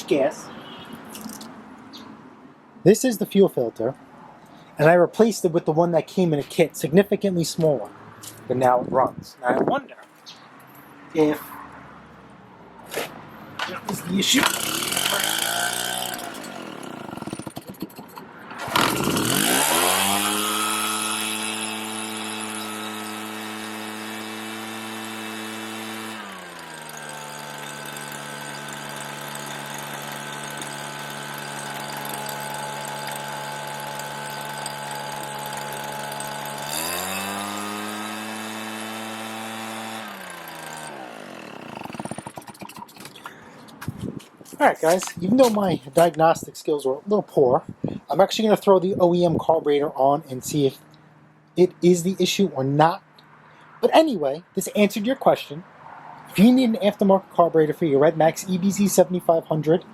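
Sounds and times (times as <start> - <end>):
leaf blower two-stroke engine: 12.9 - 43.5.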